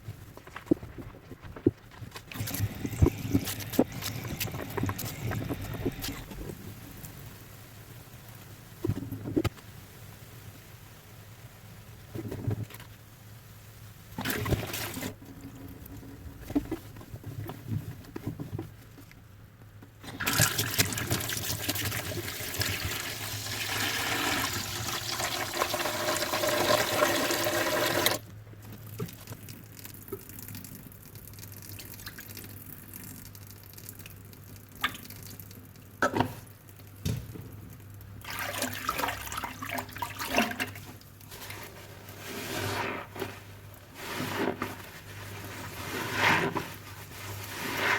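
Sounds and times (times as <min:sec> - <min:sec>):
soapy sponge squelching: 0:00.3 - 0:06.5, 0:38.2 - 0:47.9
water running over sponge: 0:20.0 - 0:28.2, 0:38.2 - 0:47.9.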